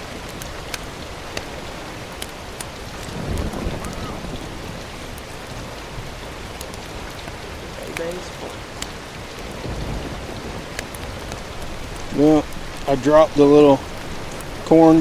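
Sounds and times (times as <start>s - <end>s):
low rumbles: 0.0s - 15.0s
wind and water hiss: 0.0s - 15.0s
faint clicks: 0.2s - 4.5s, 6.5s - 9.6s, 10.6s - 14.8s.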